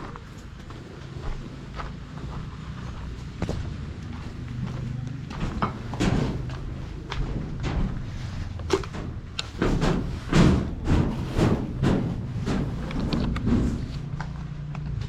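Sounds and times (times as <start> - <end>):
knocks and thuds: 5.3 - 14.2.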